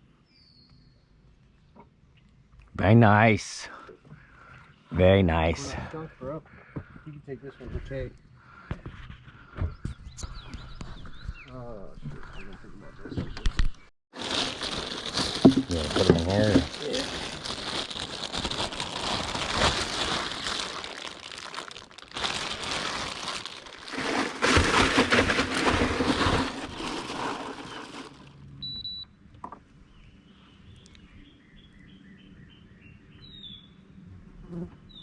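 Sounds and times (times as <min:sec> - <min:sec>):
bird chirping: 0:09.7 - 0:13.5, 0:29.9 - 0:33.8
loud rough rustling: 0:14.1 - 0:28.3.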